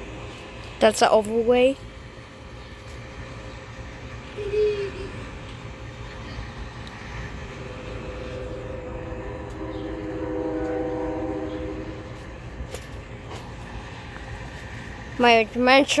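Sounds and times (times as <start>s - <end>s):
train rumbling: 0.0s - 16.0s
train horn chord: 5.6s - 15.1s.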